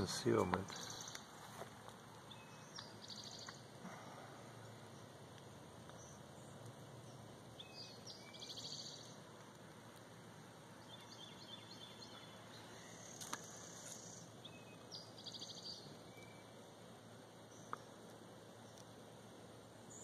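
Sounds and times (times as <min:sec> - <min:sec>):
bird chirps: 0:00.0 - 0:01.3, 0:02.2 - 0:03.7, 0:05.9 - 0:09.2, 0:10.8 - 0:16.6
faint distant birdsong trills: 0:00.0 - 0:20.0.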